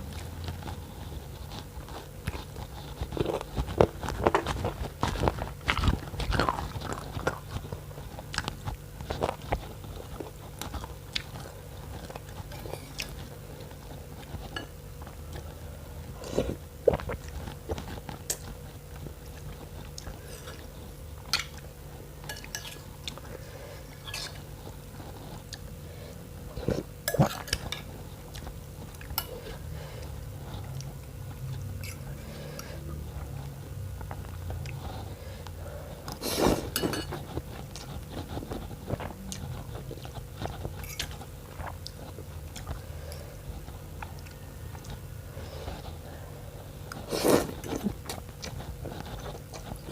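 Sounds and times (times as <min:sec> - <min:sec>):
person chewing and biting: 0:00.0 - 0:20.9, 0:36.1 - 0:45.2, 0:46.8 - 0:49.9.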